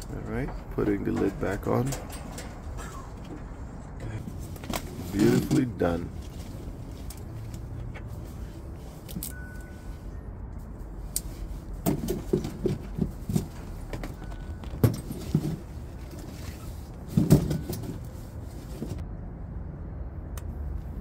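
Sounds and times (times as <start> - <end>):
knocks and metallic clatter: 0.0 - 7.2, 11.8 - 19.0.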